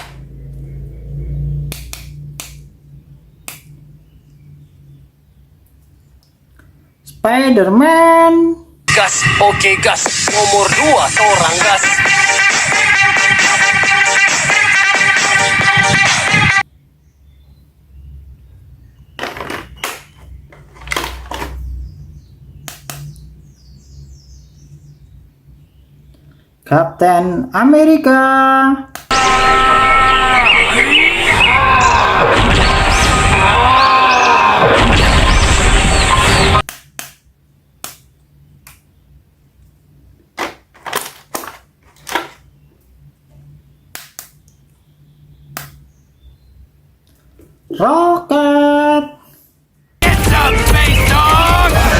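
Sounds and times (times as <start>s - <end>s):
plastic toys clicking and knocking: 19.2s - 21.6s, 40.4s - 42.5s.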